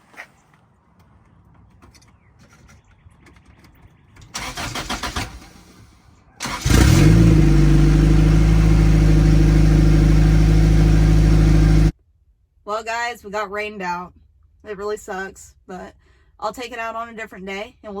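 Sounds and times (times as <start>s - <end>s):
engine starter cranking: 4.2s - 9.7s
car engine idling loudly: 6.6s - 11.9s.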